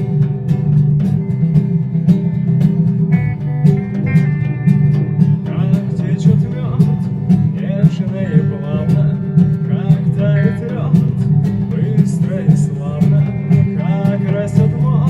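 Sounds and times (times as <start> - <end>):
acoustic guitar: 0.0 - 15.0
pulsing bass line: 0.0 - 15.0
steady drum beat: 0.0 - 15.0
person singing: 5.3 - 15.0.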